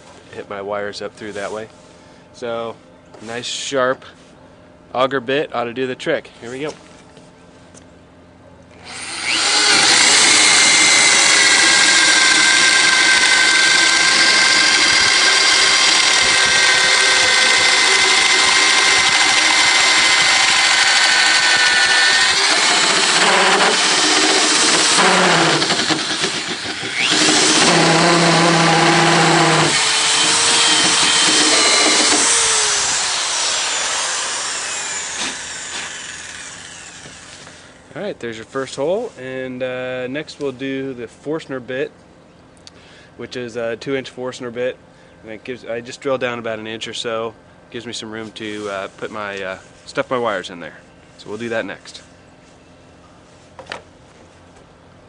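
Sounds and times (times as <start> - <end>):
power drill boring into wood: 8.8 - 37.7.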